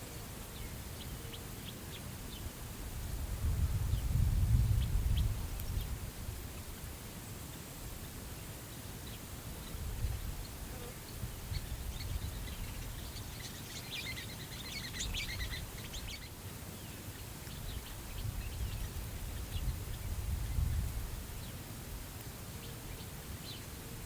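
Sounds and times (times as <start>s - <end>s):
wind rumbling and gusting: 3.0s - 6.4s, 18.2s - 21.4s.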